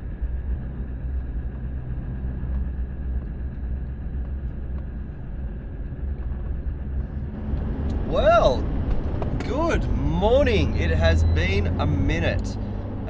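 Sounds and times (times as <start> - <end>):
vehicle engine and road rumble: 0.0 - 13.0.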